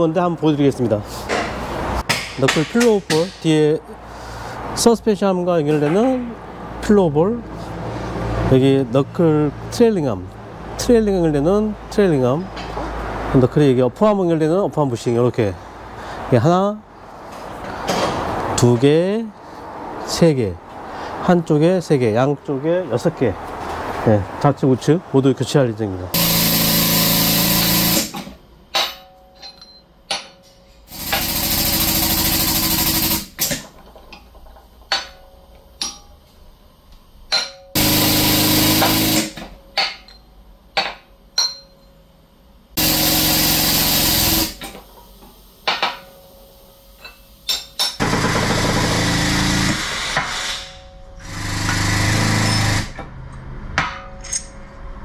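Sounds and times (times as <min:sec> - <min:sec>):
pneumatic power tool bursts: 0:26.2 - 0:28.4, 0:30.9 - 0:33.7, 0:37.8 - 0:39.4, 0:42.8 - 0:44.8, 0:48.0 - 0:53.0.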